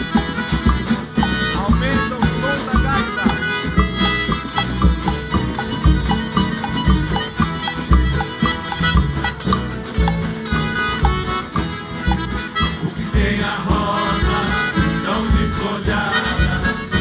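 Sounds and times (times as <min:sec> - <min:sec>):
live folk band music: 0:00.0 - 0:17.0.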